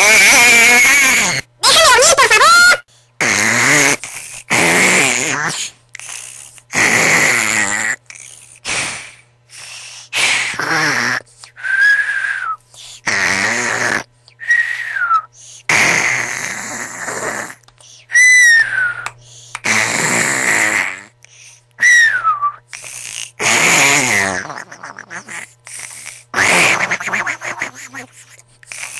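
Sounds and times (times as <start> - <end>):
person snoring loudly: 3.2 - 9.2, 10.2 - 14.9, 15.6 - 17.6, 19.6 - 21.2, 22.7 - 28.9
high whistling breaths: 11.4 - 13.0, 14.3 - 15.6, 17.9 - 19.6, 21.3 - 23.3.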